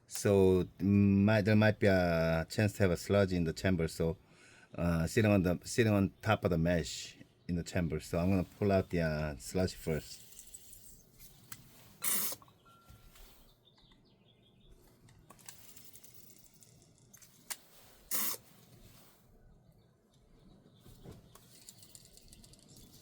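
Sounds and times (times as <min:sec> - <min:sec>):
syringe sucking hiss: 0:11.6 - 0:12.5, 0:17.5 - 0:19.1.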